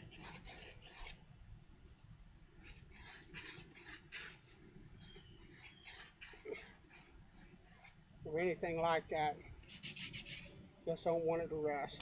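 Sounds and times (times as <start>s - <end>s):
sandpaper scratching metal: 0.0s - 1.2s, 2.6s - 8.0s, 9.6s - 10.5s.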